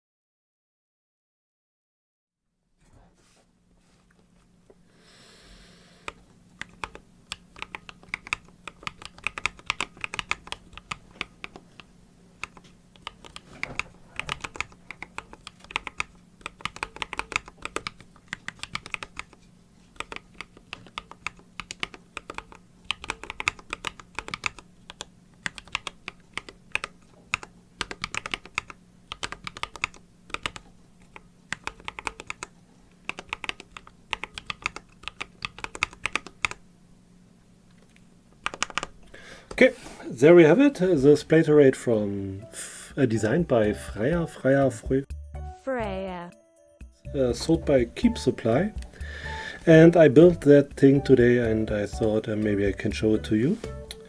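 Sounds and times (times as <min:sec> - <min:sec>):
mechanical keyboard typing: 0:06.0 - 0:39.7, 0:47.1 - 0:54.0.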